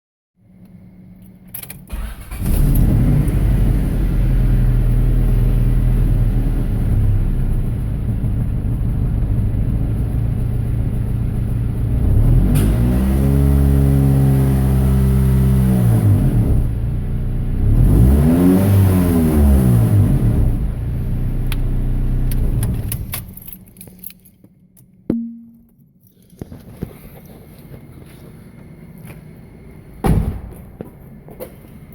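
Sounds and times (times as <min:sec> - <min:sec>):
car engine starting and idling: 0:00.7 - 0:23.9
car engine revving: 0:02.1 - 0:22.9.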